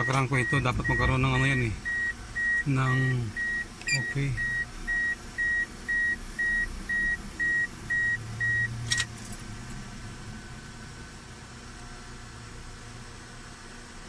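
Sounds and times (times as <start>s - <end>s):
electronic beeps: 0.0s - 8.7s.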